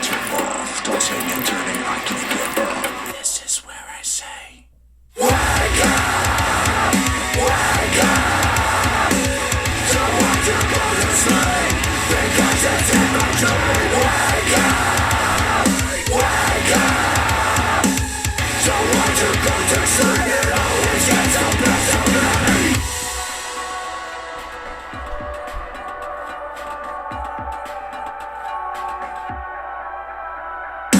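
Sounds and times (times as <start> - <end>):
music with steady drum beat: 5.2 - 28.1.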